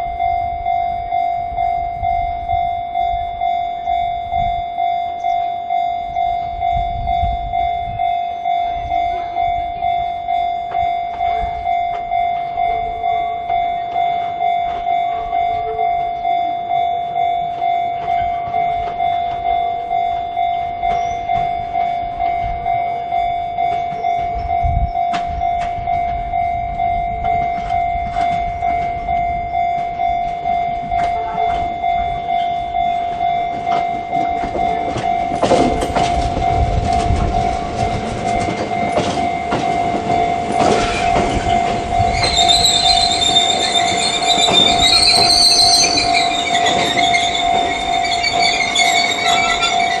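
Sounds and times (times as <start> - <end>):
approaching train rumble: 0.0 - 50.0
level crossing warning alarm: 0.0 - 50.0.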